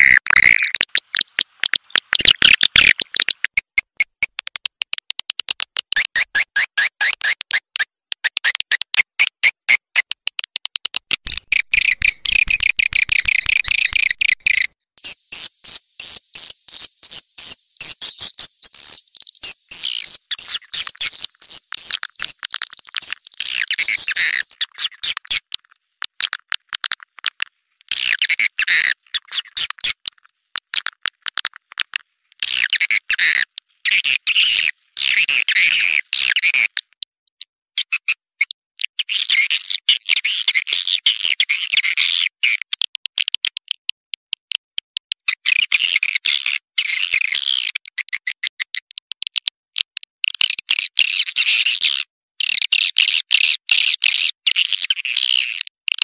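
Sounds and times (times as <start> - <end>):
swiftlet twittering calls: 11.3 - 24.8.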